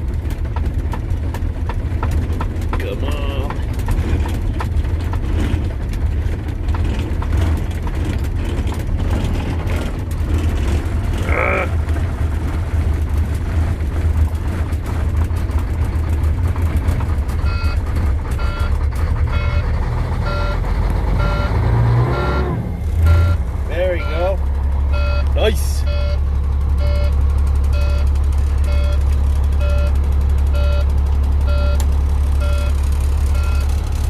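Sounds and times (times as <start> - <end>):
diesel truck engine rumbling: 0.0 - 34.0
warning beeps: 18.4 - 18.7, 19.3 - 20.6, 21.2 - 26.2, 26.8 - 29.0, 29.6 - 29.9, 30.6 - 30.9, 31.5 - 31.8, 32.4 - 33.8.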